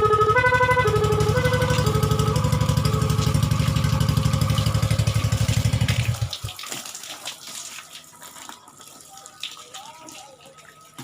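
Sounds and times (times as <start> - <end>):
short horn tone: 0.0 - 3.7
scooter engine idling: 0.0 - 6.4.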